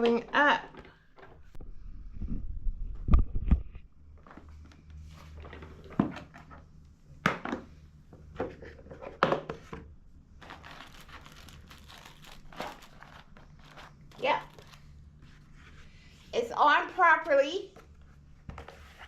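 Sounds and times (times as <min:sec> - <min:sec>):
faint low hum: 0:00.0 - 0:19.0
paper bag crinkling: 0:10.4 - 0:15.0.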